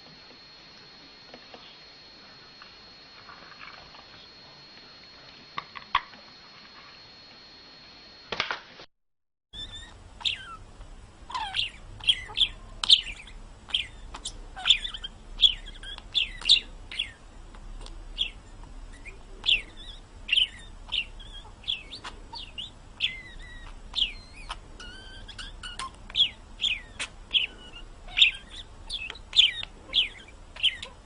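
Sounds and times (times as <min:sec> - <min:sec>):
small bird chirping: 0:09.5 - 0:31.0.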